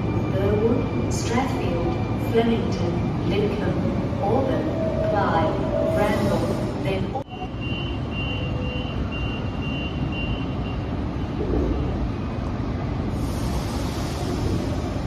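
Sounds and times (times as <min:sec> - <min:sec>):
train rumbling: 0:00.0 - 0:15.0
train hiss: 0:13.1 - 0:15.0.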